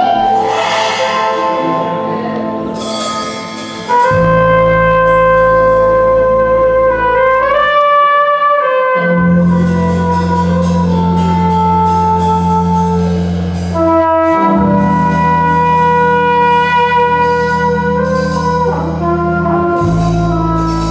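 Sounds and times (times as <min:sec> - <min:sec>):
deep low note: 0:00.0 - 0:07.5
jazz horns sustained chords: 0:00.0 - 0:20.9.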